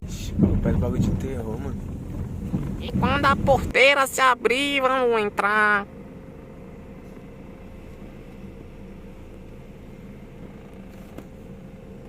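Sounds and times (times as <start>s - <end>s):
car engine running: 0.0s - 12.0s
faint steady hum: 0.0s - 12.0s.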